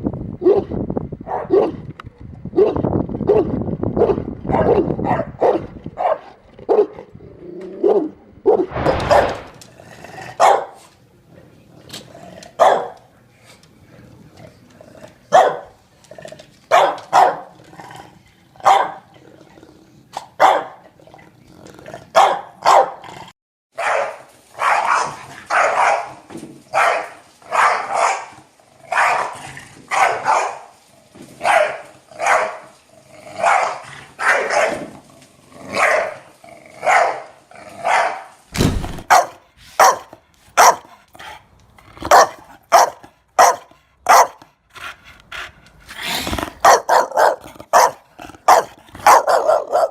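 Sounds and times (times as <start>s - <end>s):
dog barking: 0.4s - 0.7s, 1.3s - 1.8s, 2.6s - 7.0s, 10.4s - 10.8s, 12.6s - 13.0s, 15.3s - 15.7s, 16.7s - 17.5s, 18.6s - 19.1s, 20.2s - 20.8s, 22.2s - 23.0s, 23.8s - 30.7s, 31.4s - 32.6s, 33.4s - 34.8s, 35.8s - 36.2s, 36.8s - 38.3s, 39.1s - 41.0s, 42.1s - 44.4s, 46.6s - 49.9s
second dog barking: 10.4s - 10.8s, 12.6s - 13.0s, 16.7s - 17.5s, 18.6s - 19.0s, 20.4s - 20.8s, 22.2s - 23.0s, 23.8s - 26.1s, 26.8s - 28.3s, 29.9s - 30.6s, 36.9s - 38.3s, 39.1s - 40.9s, 42.1s - 44.4s, 46.6s - 49.9s.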